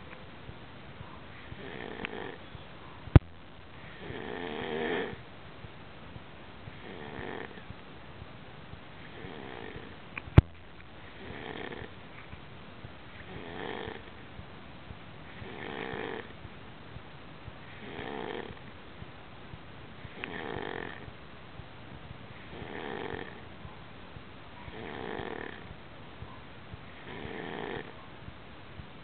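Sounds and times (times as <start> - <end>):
person snoring: 3.9 - 5.2, 6.8 - 7.6, 11.2 - 11.9, 13.3 - 14.0, 15.4 - 16.3, 17.8 - 18.6, 20.2 - 21.0, 22.5 - 23.4, 24.7 - 25.6, 27.0 - 27.9.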